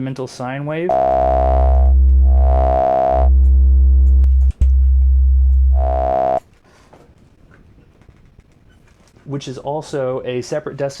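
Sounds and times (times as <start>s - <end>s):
sustained low synthesizer note: 0.9s - 6.4s.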